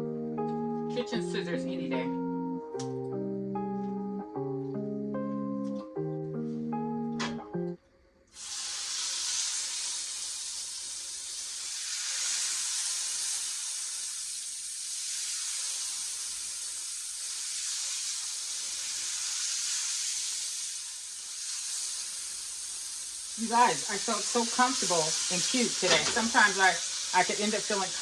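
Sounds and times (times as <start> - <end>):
meat sizzling in a pan: 8.3 - 28.0.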